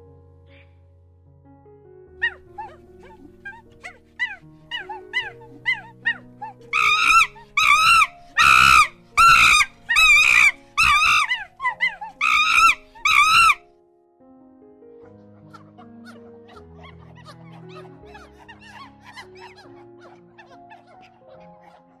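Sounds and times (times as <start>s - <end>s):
background music: 0.0s - 22.0s
monkey calling: 2.2s - 13.6s, 16.5s - 22.0s.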